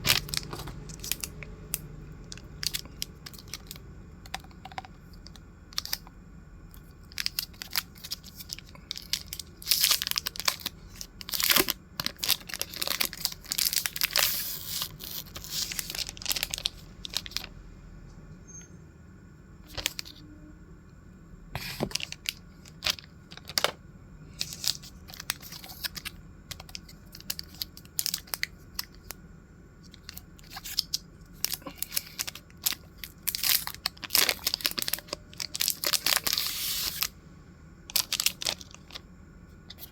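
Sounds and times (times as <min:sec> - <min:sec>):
packaging crinkling and tearing: 0:00.0 - 0:03.8, 0:05.3 - 0:06.0, 0:07.0 - 0:17.5, 0:19.7 - 0:20.2, 0:21.6 - 0:23.8, 0:24.4 - 0:29.0, 0:29.9 - 0:37.1, 0:37.9 - 0:39.0.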